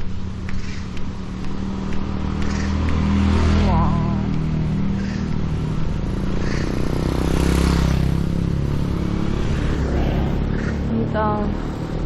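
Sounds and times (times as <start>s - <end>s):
passing traffic engine hum: 0.0s - 12.0s.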